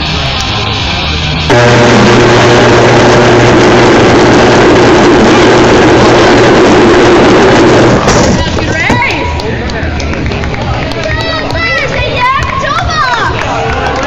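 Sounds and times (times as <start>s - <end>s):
electric race car motors whining: 0.0s - 8.4s.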